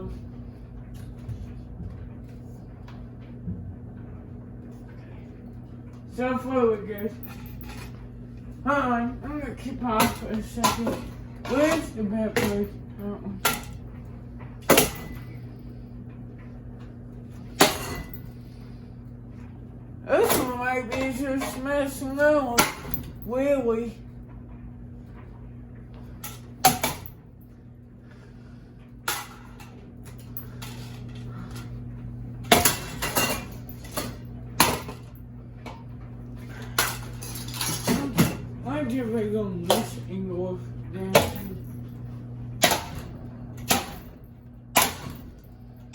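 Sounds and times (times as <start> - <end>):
steady low hum: 0.0 - 45.9
ceiling fan being struck: 9.3 - 15.5, 20.0 - 23.6, 26.2 - 27.3, 32.4 - 36.0, 40.9 - 45.9.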